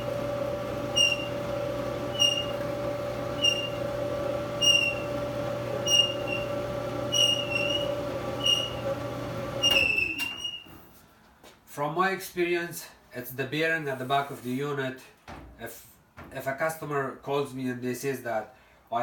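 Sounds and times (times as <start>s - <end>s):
clothes dryer motor hum: 0.0s - 10.9s
short high squeak: 0.9s - 1.4s, 2.1s - 2.6s, 3.4s - 3.8s, 4.6s - 5.1s, 5.8s - 6.5s, 7.1s - 8.8s, 9.6s - 10.8s.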